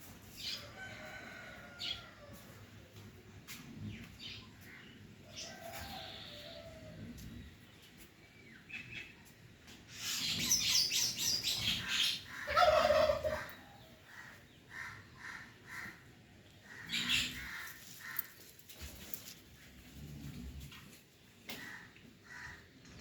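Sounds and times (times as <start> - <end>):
birds chirping: 7.5 - 19.3.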